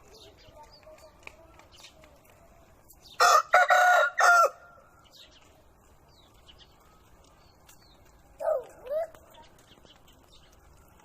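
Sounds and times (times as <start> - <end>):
rooster crowing: 3.2 - 4.7.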